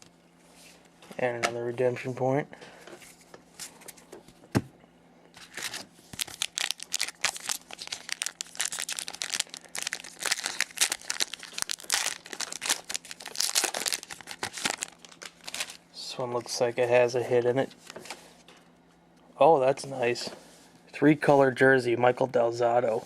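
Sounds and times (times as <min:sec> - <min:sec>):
card pack wrappers crinkling: 0:05.4 - 0:15.8.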